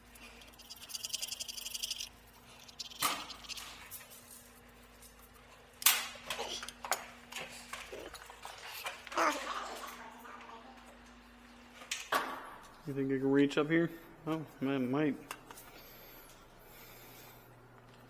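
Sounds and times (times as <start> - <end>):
fast high rattle: 0.0 - 4.2
faint steady hum: 0.0 - 18.0.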